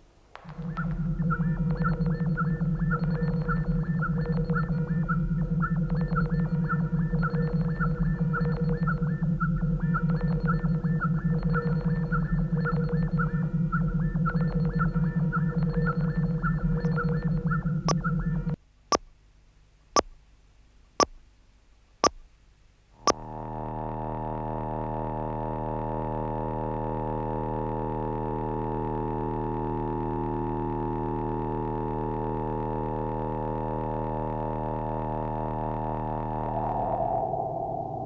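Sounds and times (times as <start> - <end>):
synthesized drone: 0.4 - 18.5, 23.1 - 38.0
sharp electronic clicks: 0.4 - 19.1, 20.0 - 20.2, 21.0 - 21.2, 22.0 - 22.2.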